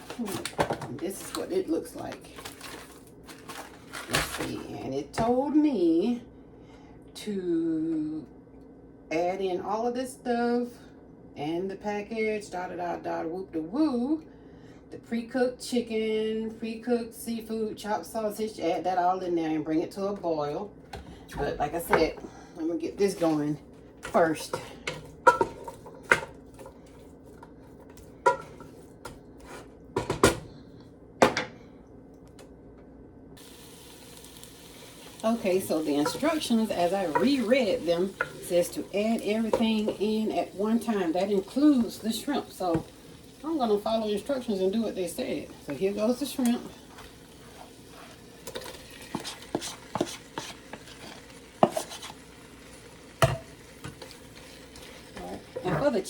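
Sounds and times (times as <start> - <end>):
utensils clanking against pot: 24.0 - 26.8, 28.2 - 28.7
food sizzling in pot: 33.4 - 56.0.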